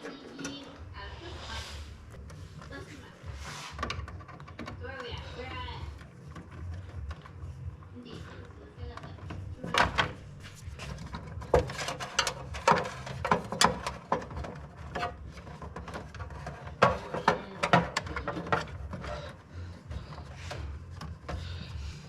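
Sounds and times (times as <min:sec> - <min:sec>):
steady low hum: 0:00.0 - 0:22.0
tools clicking and scraping on panel: 0:03.4 - 0:05.3, 0:10.8 - 0:21.8.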